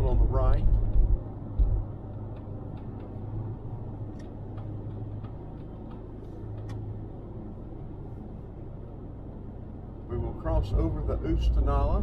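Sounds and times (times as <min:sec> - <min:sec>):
car road and engine rumble: 0:00.0 - 0:12.0
faint light ticks: 0:04.1 - 0:06.8.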